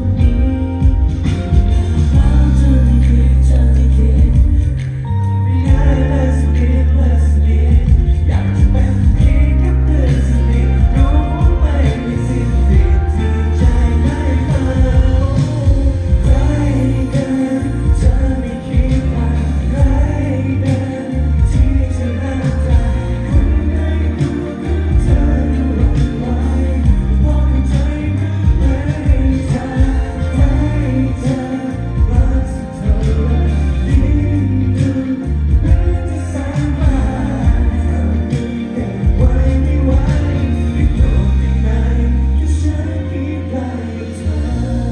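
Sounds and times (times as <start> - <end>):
heavy bass beat: 0.0 - 43.0
live pop music with singing: 0.0 - 44.9.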